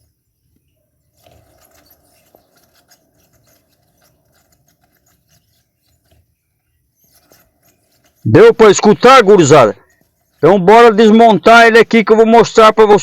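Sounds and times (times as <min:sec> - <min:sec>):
electric fan whining and squeaking: 0:01.2 - 0:10.6.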